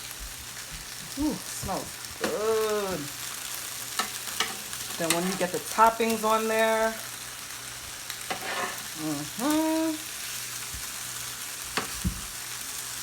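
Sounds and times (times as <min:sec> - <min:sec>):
patties sizzling on a grill: 0:00.0 - 0:13.0
person humming: 0:01.1 - 0:03.1, 0:08.9 - 0:10.1
utensils knocking on pan: 0:11.8 - 0:12.3.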